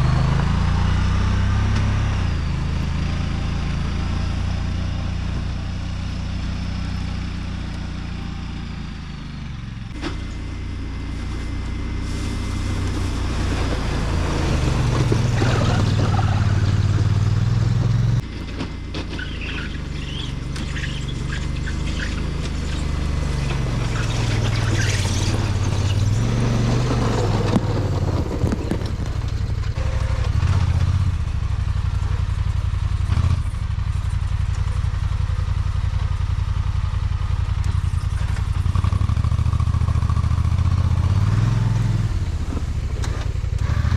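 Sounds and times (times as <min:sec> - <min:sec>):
small engine working hard: 0:00.0 - 0:43.9
blade scraping snow: 0:10.0 - 0:17.5, 0:19.0 - 0:30.5.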